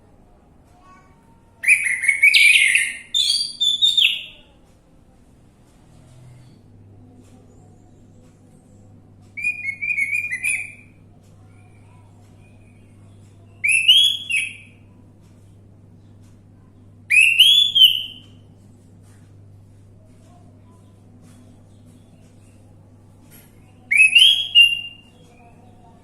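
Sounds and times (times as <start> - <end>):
thrush singing whistled phrases: 1.6 - 4.3, 13.6 - 14.7, 17.1 - 18.2, 23.9 - 25.1.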